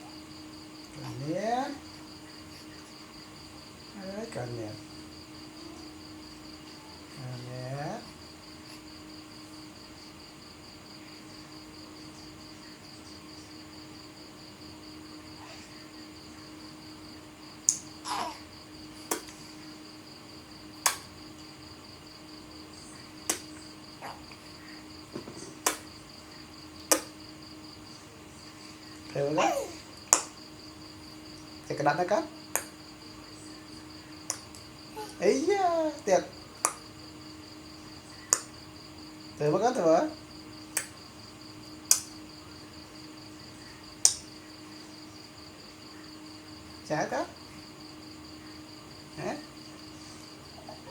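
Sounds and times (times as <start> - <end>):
faint low hum: 0.0 - 50.9
high pulsing insect-like trill: 0.0 - 50.9
loud sharp clicks: 20.8 - 21.1, 26.9 - 27.2, 40.8 - 41.0, 41.9 - 42.1, 44.0 - 44.2.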